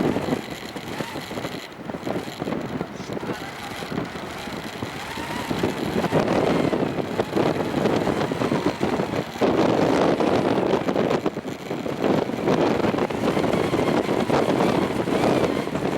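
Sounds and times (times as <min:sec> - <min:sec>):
gusting wind buffeting microphone: 0:00.0 - 0:15.9.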